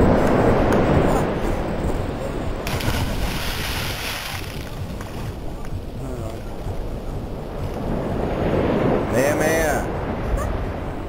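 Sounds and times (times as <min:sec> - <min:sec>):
wind on microphone: 0:00.0 - 0:11.0
water rushing: 0:02.5 - 0:11.0.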